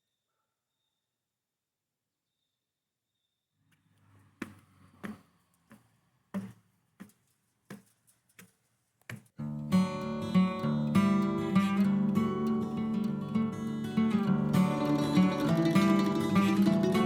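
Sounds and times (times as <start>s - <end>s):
acoustic guitar music: 9.4s - 17.0s.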